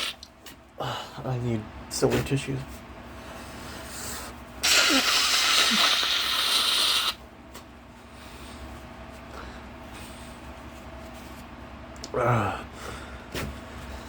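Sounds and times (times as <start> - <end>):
person blowing nose: 0.0 - 0.2, 4.6 - 7.2.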